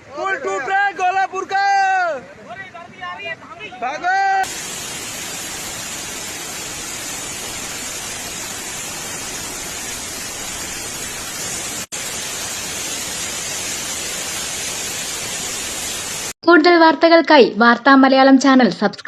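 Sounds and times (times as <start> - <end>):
river rushing: 1.4 - 16.3.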